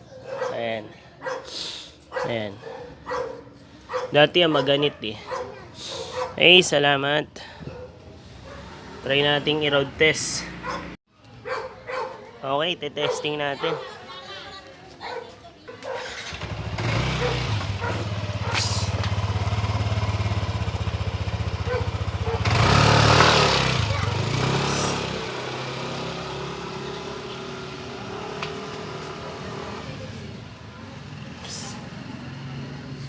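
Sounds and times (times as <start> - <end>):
scooter engine starting and revving: 15.8 - 33.0.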